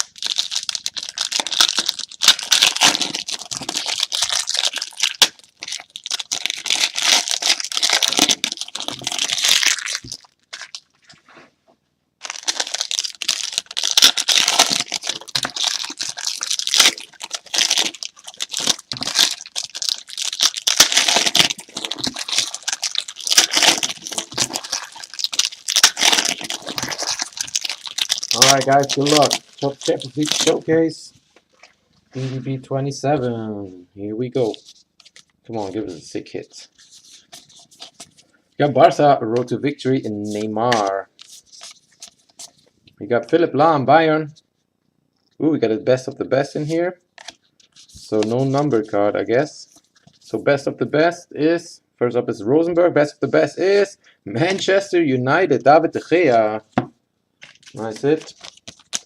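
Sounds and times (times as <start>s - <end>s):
plastic wrapping crackling: 0.0s - 11.2s, 12.2s - 30.7s, 57.4s - 59.0s.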